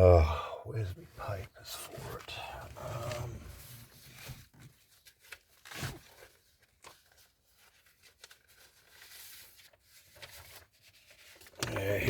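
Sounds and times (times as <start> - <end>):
paper rustling and crinkling: 2.8 - 12.0.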